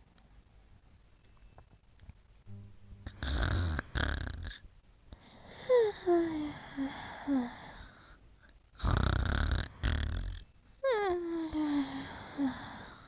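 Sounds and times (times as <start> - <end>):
dog snoring: 3.0 - 4.6, 8.8 - 10.4.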